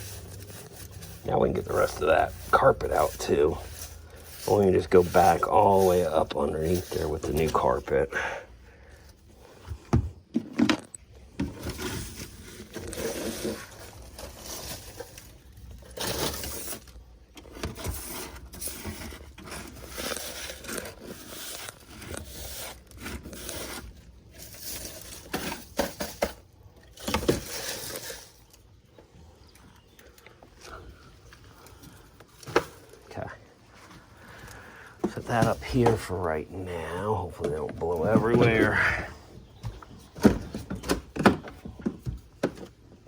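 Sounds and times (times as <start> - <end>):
carpet scraping and tearing: 0.0 - 8.0, 11.6 - 25.8.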